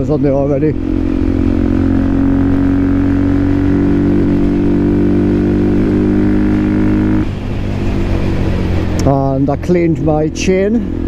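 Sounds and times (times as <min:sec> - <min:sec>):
motorcycle engine cruising: 0:00.0 - 0:11.0.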